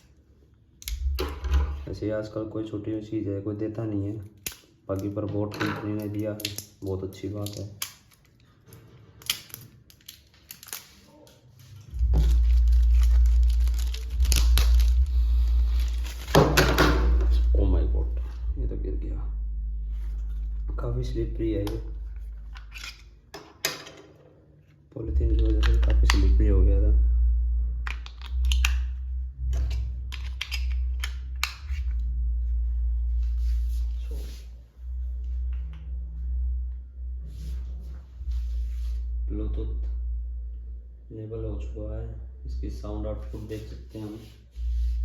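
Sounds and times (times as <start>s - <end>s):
steady low hum: 0.0s - 7.8s, 11.4s - 45.0s
loud steady low rumble: 0.8s - 3.9s, 11.6s - 23.3s, 24.9s - 45.0s
plastic packaging crinkling: 6.0s - 17.5s
plastic wrapping rustling: 6.0s - 17.6s.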